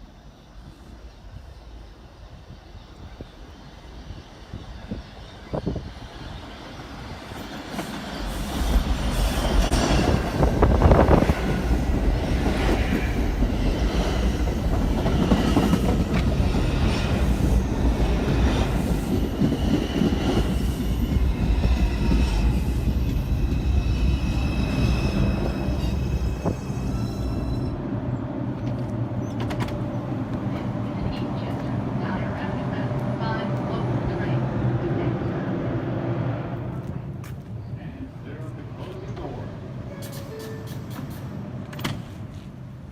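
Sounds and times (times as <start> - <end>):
subway train rumbling: 0.0 - 42.9
high wheel squeal: 20.6 - 27.8.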